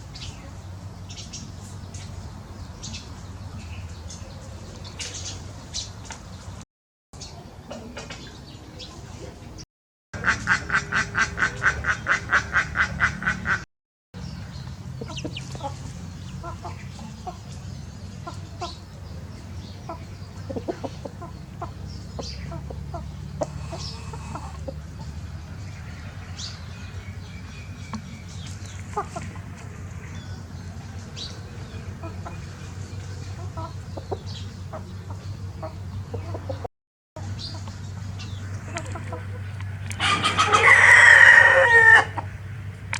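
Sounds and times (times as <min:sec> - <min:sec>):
birds calling: 0:10.2 - 0:13.6, 0:14.2 - 0:42.6.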